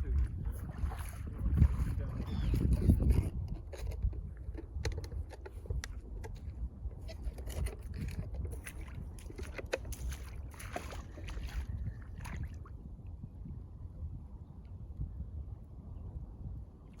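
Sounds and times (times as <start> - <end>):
steady low rumble: 0.0 - 16.9
water splashing: 8.0 - 12.8.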